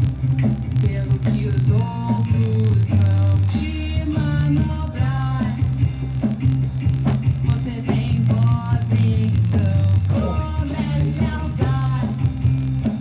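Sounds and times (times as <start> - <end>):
bass guitar line: 0.0 - 13.0
electric guitar: 0.0 - 13.0
person singing: 0.8 - 5.8, 7.4 - 12.4.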